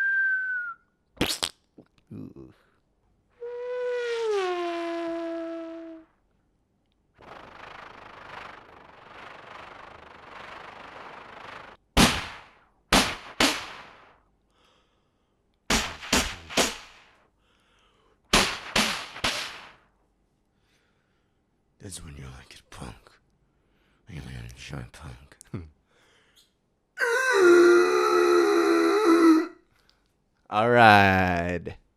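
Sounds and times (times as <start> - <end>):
breathy hiss by mouth: 7.2 - 11.8
mouth-made gunshots: 12.0 - 14.2, 15.7 - 17.1, 18.3 - 19.8.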